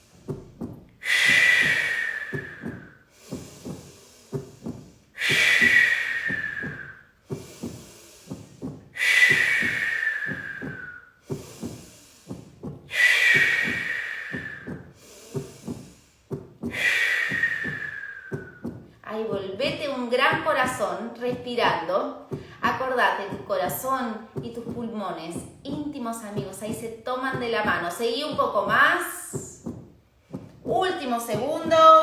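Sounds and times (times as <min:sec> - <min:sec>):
low thumping beat: 0:00.0 - 0:32.0
forceful exhales through mouth: 0:01.0 - 0:19.0.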